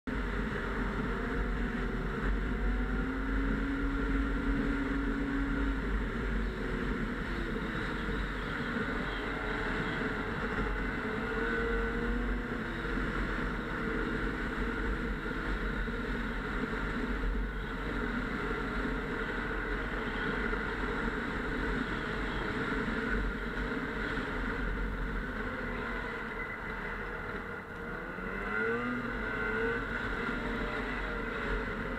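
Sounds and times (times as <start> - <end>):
snowmobile engine running: 26.8 - 31.9.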